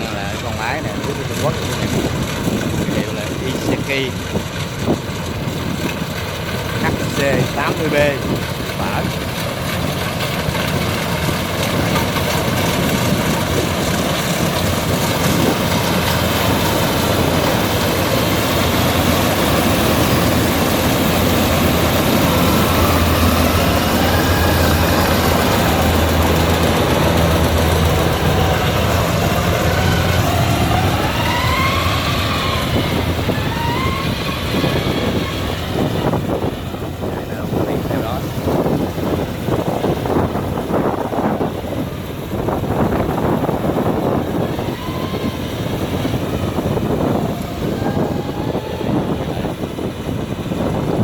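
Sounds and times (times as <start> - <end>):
combine harvester running: 0.0 - 51.0.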